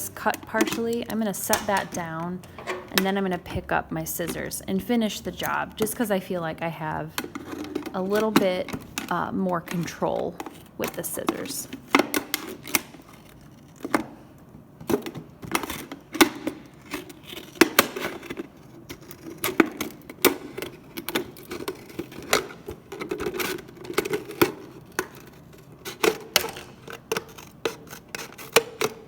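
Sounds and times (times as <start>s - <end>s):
scissors snipping plastic: 0.0s - 6.2s, 14.8s - 29.0s.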